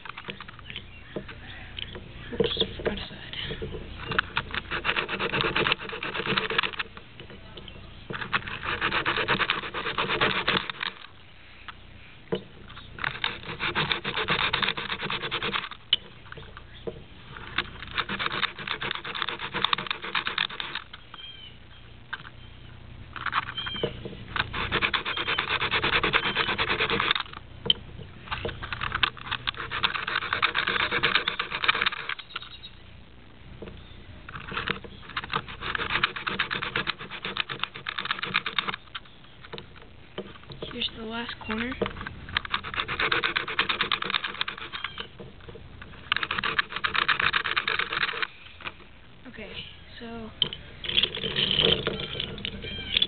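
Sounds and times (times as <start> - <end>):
plastic rubbed on sandpaper: 3.9 - 6.9, 8.1 - 11.1, 13.0 - 15.8, 17.3 - 21.0, 24.4 - 27.4, 28.3 - 32.5, 34.3 - 39.1, 40.6 - 45.2, 45.8 - 48.8.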